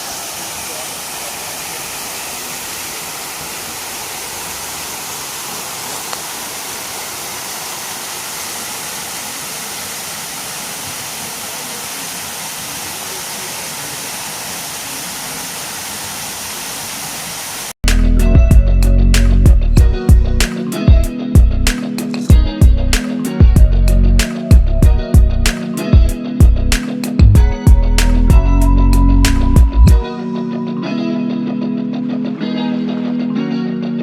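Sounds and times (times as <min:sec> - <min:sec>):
waterfall rushing: 0:00.0 - 0:17.8
loud guitar music: 0:17.8 - 0:34.0.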